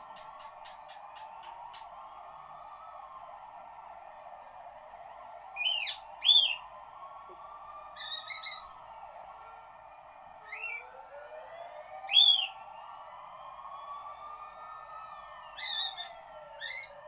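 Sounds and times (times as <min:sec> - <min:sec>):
police siren wail: 0:00.0 - 0:17.0
cockatiel whistled calls: 0:05.6 - 0:06.6, 0:11.7 - 0:12.5.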